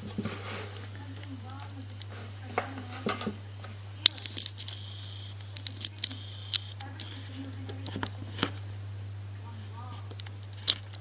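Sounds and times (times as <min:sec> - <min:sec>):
metal scraping: 0:00.0 - 0:08.7
steady low hum: 0:00.0 - 0:11.0.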